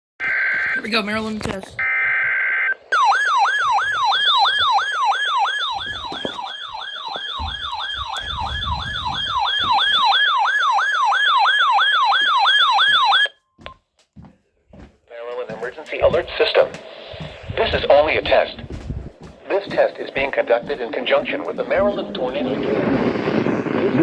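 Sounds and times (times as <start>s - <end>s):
electronic alert siren yelp: 0.2s - 13.4s.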